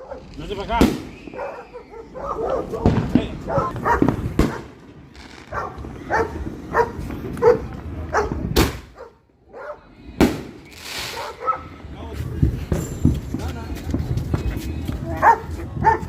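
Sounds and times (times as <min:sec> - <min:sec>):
small dog barking: 0:01.4 - 0:02.8, 0:03.5 - 0:04.6, 0:05.5 - 0:08.4, 0:11.2 - 0:11.6, 0:15.2 - 0:16.0.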